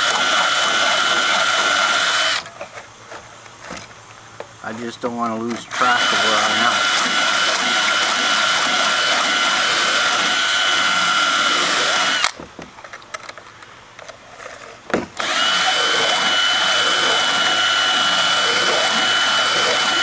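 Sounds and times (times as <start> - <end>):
drill grinding chainsaw chain: 0.0 - 2.6, 4.6 - 12.4, 14.4 - 20.0.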